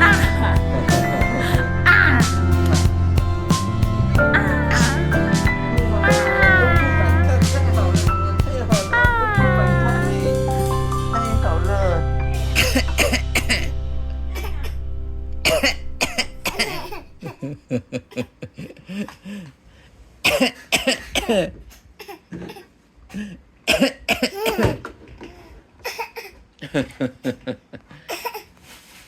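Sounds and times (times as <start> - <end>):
music with low drone: 0.0 - 17.3
man coughing: 12.6 - 13.7.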